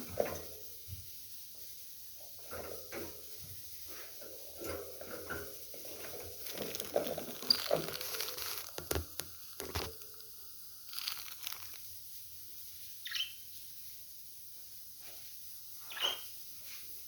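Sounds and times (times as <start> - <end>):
scratchy rustling and clicking: 3.9 - 10.3, 10.9 - 11.9
budgerigars chirping: 13.0 - 13.4, 15.9 - 16.3.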